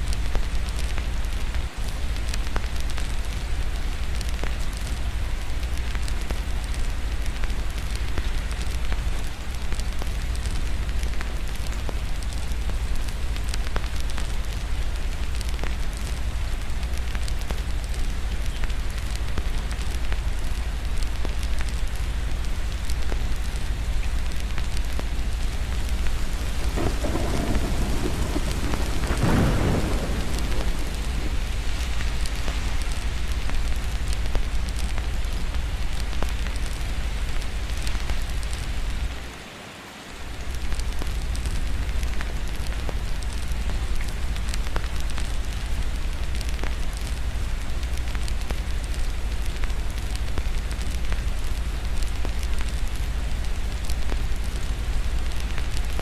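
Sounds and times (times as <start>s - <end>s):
small crackles and pops: 0.0s - 39.4s, 40.3s - 56.0s
steady rain: 0.0s - 56.0s
low rumble: 23.9s - 36.9s
thunder roll: 25.8s - 33.2s.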